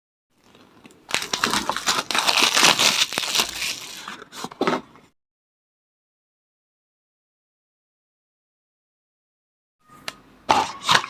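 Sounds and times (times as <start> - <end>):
packaging crinkling: 0.4 - 4.2.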